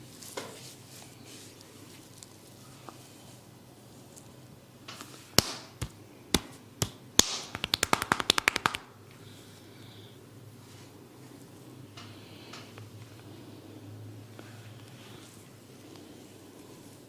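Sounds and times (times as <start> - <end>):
hand slaps on head: 5.4 - 8.9
rapid hand taps: 5.4 - 8.9.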